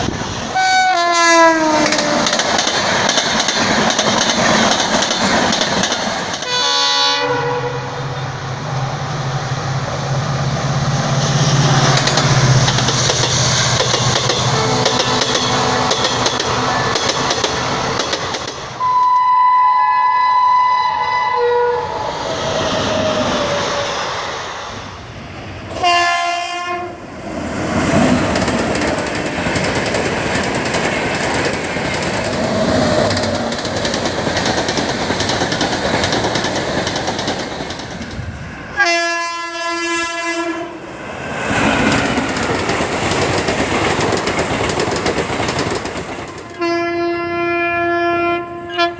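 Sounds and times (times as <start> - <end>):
train rumble with wheel clatter: 0.0 - 18.9, 21.4 - 48.9
train horn: 0.6 - 2.4, 6.4 - 8.8, 14.3 - 17.0, 18.8 - 22.2, 25.8 - 27.1, 38.8 - 40.9, 46.4 - 48.9.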